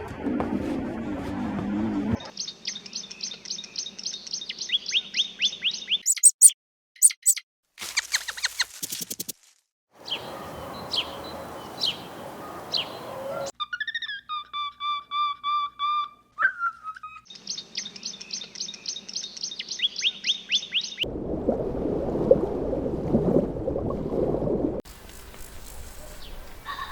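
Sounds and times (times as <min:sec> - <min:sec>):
birds chirping and trilling: 0:02.2 - 0:09.0, 0:10.0 - 0:21.1.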